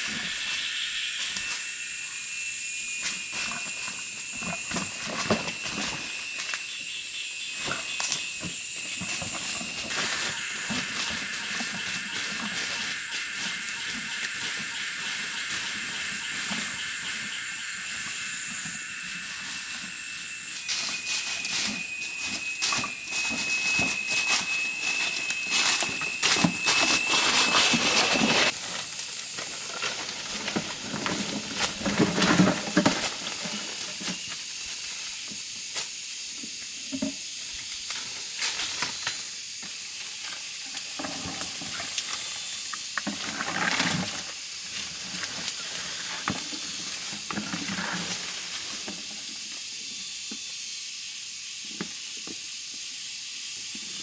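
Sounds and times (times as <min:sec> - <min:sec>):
forest insects droning: 0:00.0 - 0:54.0
rustling and crackling: 0:07.6 - 0:35.9, 0:40.8 - 0:49.3.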